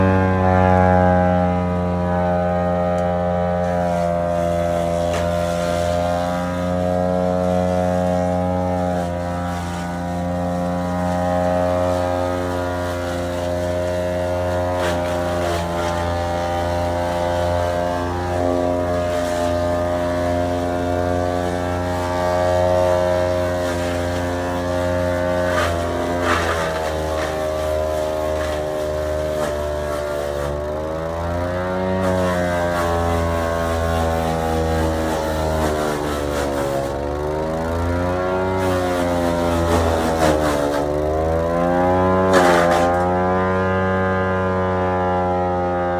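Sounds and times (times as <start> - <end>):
wood chipper engine running: 0.0 - 45.9
wood cracking and snapping: 25.5 - 27.7.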